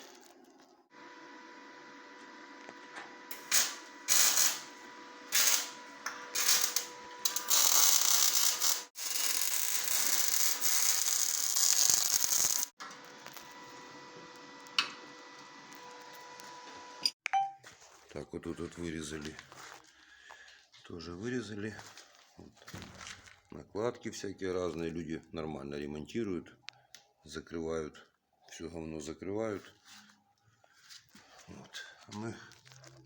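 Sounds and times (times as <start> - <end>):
power tool cutting steel: 3.3 - 12.7.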